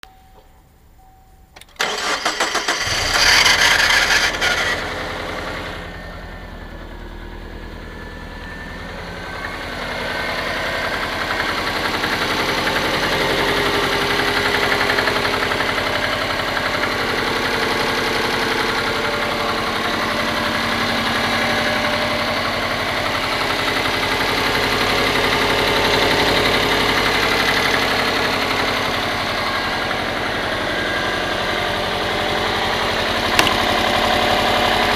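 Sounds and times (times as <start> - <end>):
starter motor cranking: 1.6 - 5.1
car engine revving and idling: 1.8 - 34.9
engine knocking: 1.8 - 34.9.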